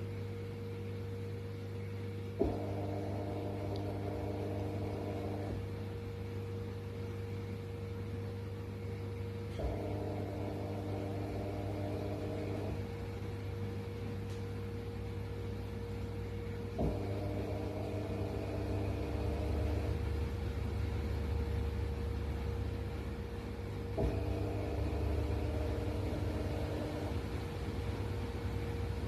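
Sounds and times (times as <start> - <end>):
washer-dryer humming: 0.0 - 29.0
click: 3.7 - 3.9.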